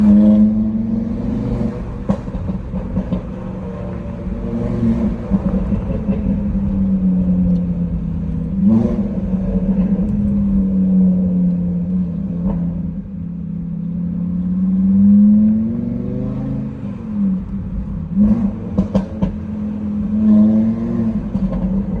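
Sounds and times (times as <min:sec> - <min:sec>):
car engine droning at revs: 0:00.0 - 0:22.0
exhaust pops and crackles: 0:01.5 - 0:13.0, 0:17.4 - 0:19.8.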